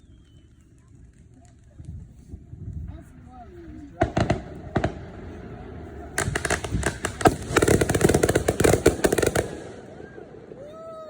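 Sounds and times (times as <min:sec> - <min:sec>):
fireworks cracking: 0:00.0 - 0:11.0.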